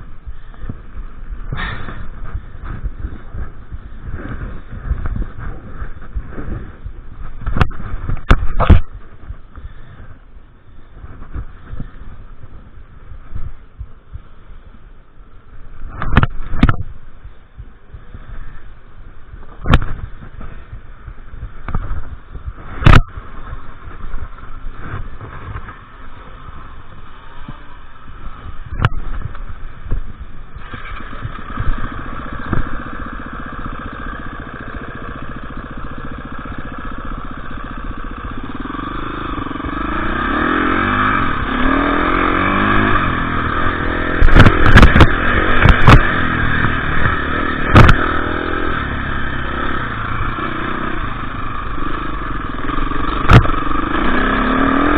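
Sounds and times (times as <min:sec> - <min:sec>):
motorcycle engine revving: 0:00.0 - 0:16.8, 0:19.2 - 0:54.9.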